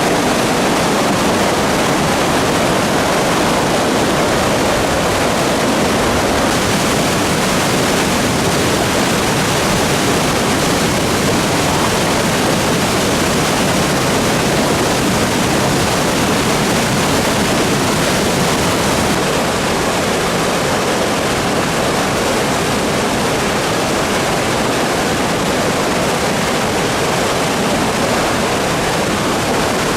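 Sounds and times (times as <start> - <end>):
river water rushing: 0.0 - 29.9.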